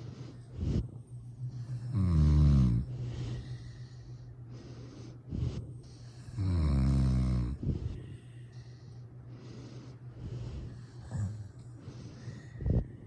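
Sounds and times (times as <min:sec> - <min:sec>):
soft breath: 0:00.0 - 0:13.0
loud snoring: 0:01.8 - 0:02.9, 0:06.3 - 0:07.6.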